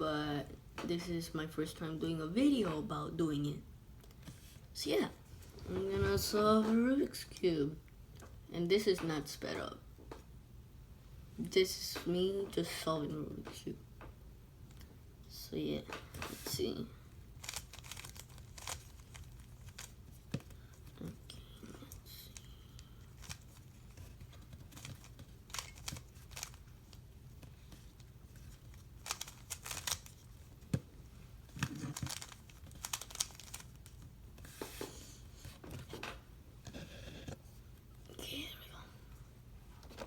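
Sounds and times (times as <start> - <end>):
rubik's cube clicking: 17.4 - 20.5, 24.7 - 26.6, 29.0 - 30.3, 31.6 - 34.0.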